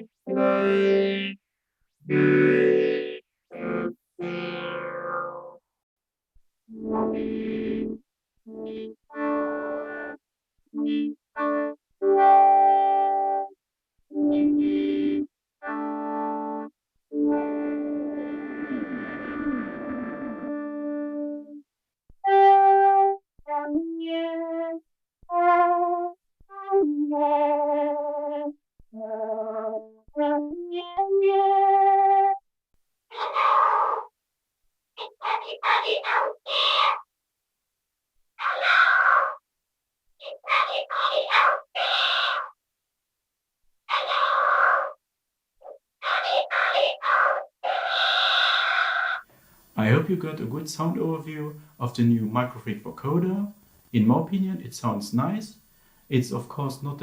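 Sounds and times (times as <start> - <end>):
robotic vocoder singing: 2.1 - 5.6, 6.8 - 10.1, 10.8 - 11.2, 14.2 - 15.3, 17.3 - 21.2, 33.1 - 34.1, 35.0 - 37.0, 40.2 - 42.6, 43.9 - 45.0, 45.6 - 49.2
synthesizer held notes: 2.1 - 5.6, 6.7 - 10.2, 14.2 - 21.6.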